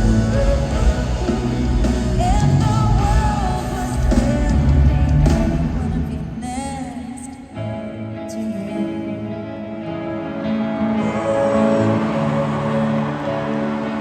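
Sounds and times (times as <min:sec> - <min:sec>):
band playing with heavy bass: 0:00.0 - 0:06.7
woman singing pop ballad: 0:00.0 - 0:09.6.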